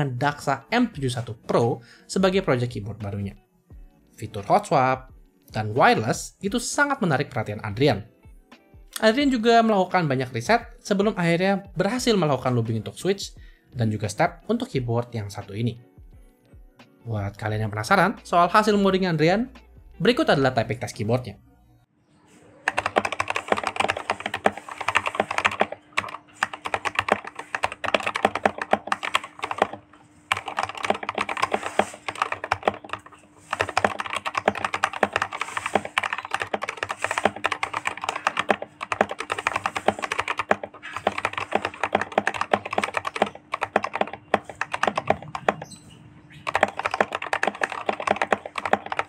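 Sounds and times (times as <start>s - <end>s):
mechanical keyboard typing: 22.6s - 45.8s, 46.4s - 49.0s.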